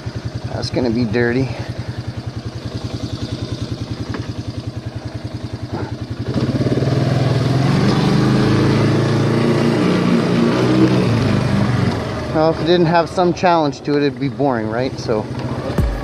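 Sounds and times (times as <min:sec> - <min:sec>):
quad bike engine revving: 0:00.0 - 0:16.0.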